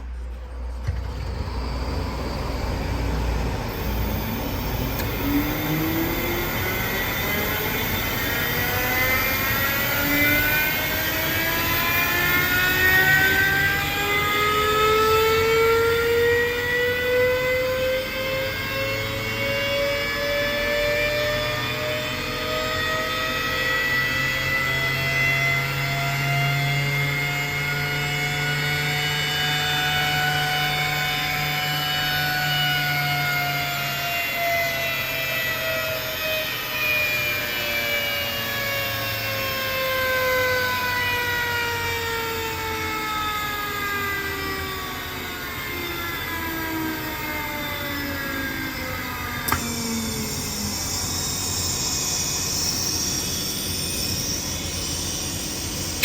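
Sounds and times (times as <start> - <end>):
screw compressor whine: 0.0 - 56.0
sharp click: 49.4 - 49.8.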